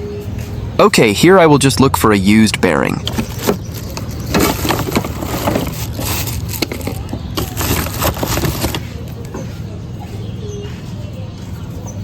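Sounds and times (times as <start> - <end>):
low hum: 1.3 - 4.2
parts knocking and clattering: 3.0 - 9.6.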